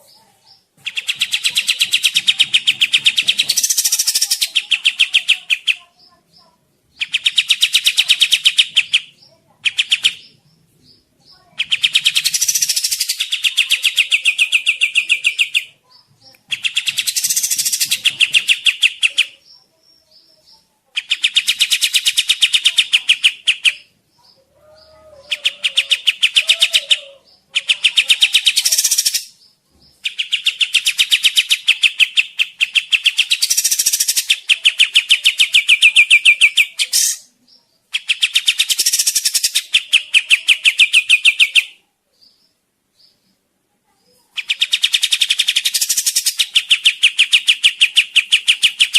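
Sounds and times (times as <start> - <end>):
fast rattling bird trills: 0.8 - 5.8, 7.0 - 10.2, 11.6 - 15.6, 16.5 - 19.3, 21.0 - 23.9, 27.6 - 29.4, 30.0 - 37.3, 38.0 - 41.7, 44.4 - 48.9.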